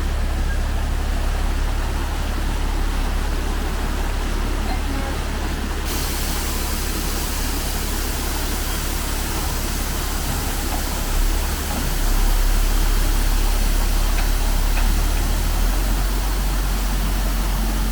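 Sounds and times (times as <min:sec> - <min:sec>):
dump truck engine rumbling: 0:00.0 - 0:17.9
broad hiss: 0:05.8 - 0:17.9.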